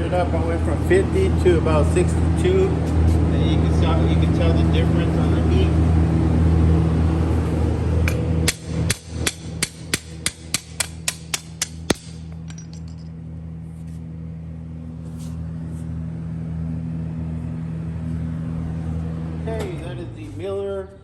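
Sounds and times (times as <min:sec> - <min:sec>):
electrical hum of welder: 0:00.0 - 0:21.0
hammer chipping metal: 0:08.1 - 0:12.8.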